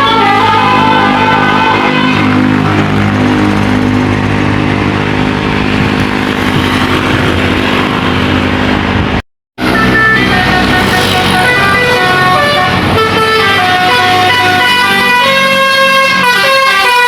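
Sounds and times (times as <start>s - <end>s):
multi-note bus horn melody: 0.0s - 3.0s, 9.6s - 17.0s
bus diesel engine passing: 0.0s - 17.0s.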